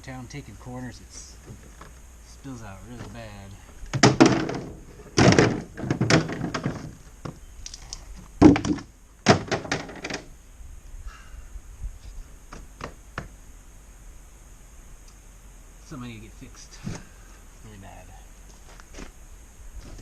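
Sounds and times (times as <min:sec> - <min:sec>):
loud thunks and knocks: 0:03.9 - 0:07.4, 0:08.4 - 0:10.3.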